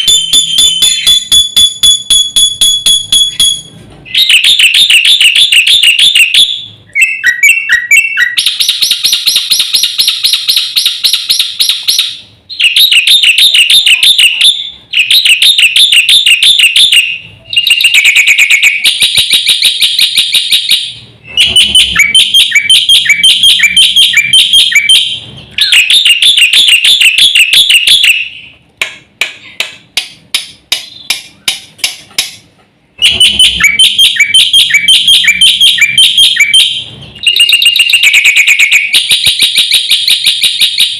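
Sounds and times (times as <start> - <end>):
bird song with trilled notes: 0.0 - 28.6, 30.7 - 31.5, 33.0 - 40.9
sharp rapid ticking bird notes: 0.0 - 28.6, 29.6 - 40.9.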